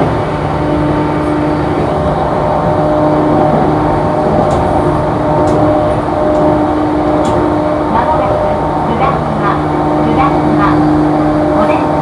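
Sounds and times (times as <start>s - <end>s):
train wheels rumbling on rail: 0.0s - 12.0s.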